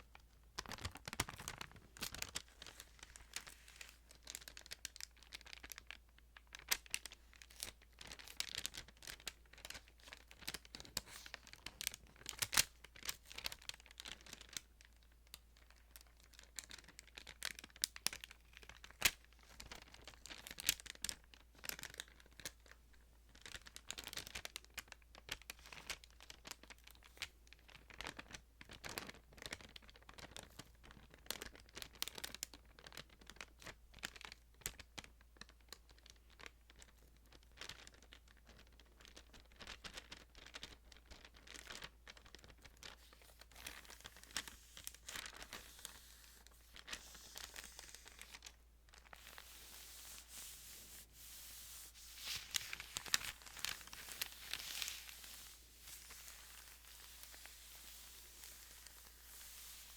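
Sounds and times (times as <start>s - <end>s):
thin paper pages rustling: 0.6s - 5.8s, 39.8s - 59.9s.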